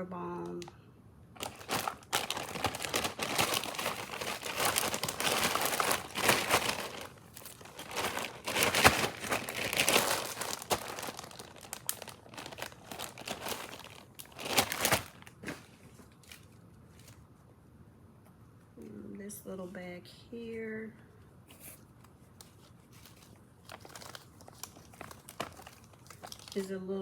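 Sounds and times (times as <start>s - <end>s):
plastic bags crinkling: 1.4s - 17.2s, 22.3s - 27.0s.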